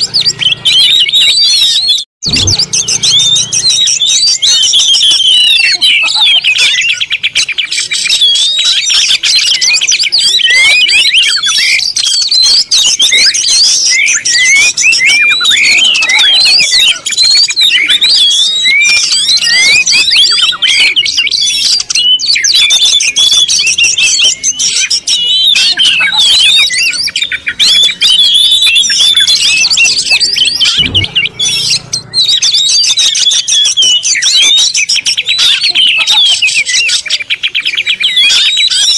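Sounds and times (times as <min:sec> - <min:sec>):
small birds chirping: 0:00.0 - 0:38.9
low thud: 0:30.6 - 0:32.2.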